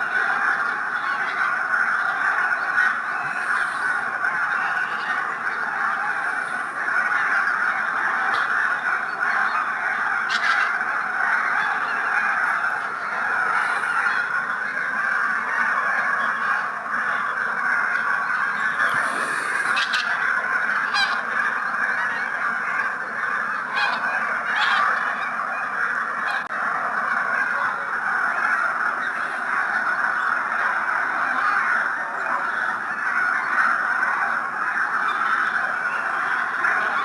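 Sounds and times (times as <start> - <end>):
geese honking: 0.0 - 37.0.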